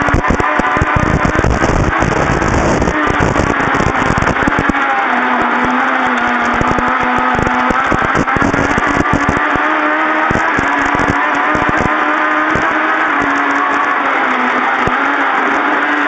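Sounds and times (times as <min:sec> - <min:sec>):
car engine under load: 0:00.0 - 0:16.0.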